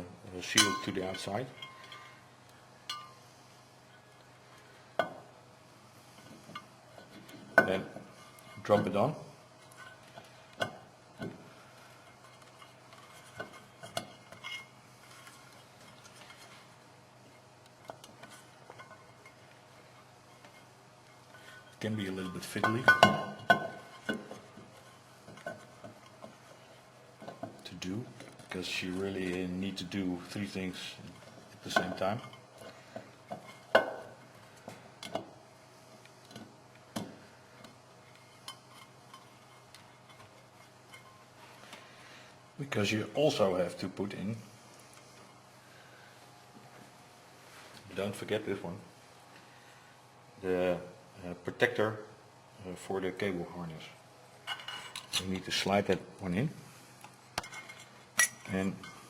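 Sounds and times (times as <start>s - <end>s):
light metallic clinks and taps: 2.9s - 3.2s.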